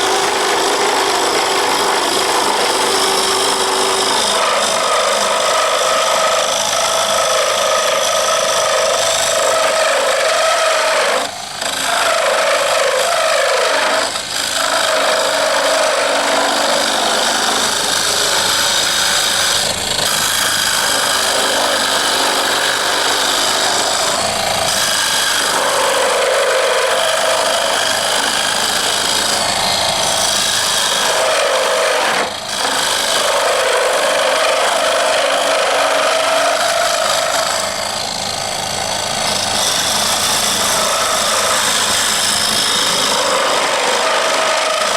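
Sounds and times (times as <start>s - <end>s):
lathe tool scraping wood: 0.0s - 44.9s.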